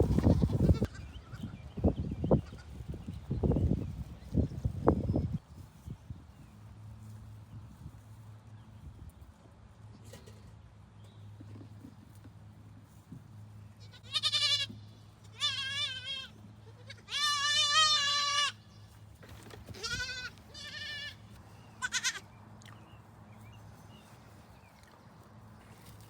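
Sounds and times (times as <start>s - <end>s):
goats bleating: 13.8s - 18.7s, 19.7s - 22.2s.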